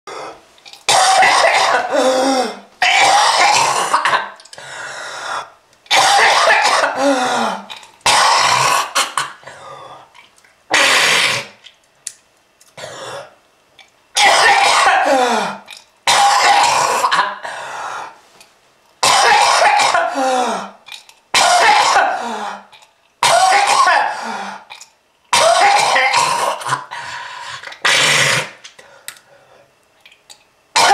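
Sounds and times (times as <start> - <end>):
person coughing: 0.9 - 4.4, 5.9 - 9.7, 14.2 - 17.5, 19.0 - 20.8, 21.4 - 24.7, 25.3 - 26.9.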